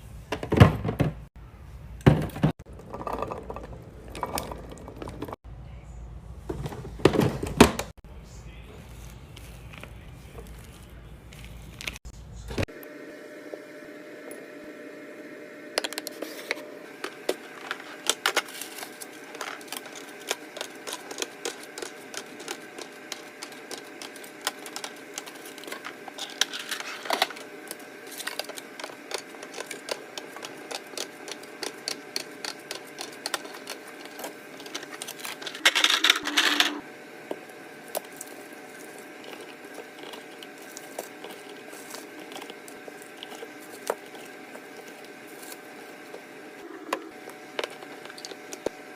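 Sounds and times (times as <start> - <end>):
containers clicking and tapping: 19.3 - 26.5, 27.1 - 36.7.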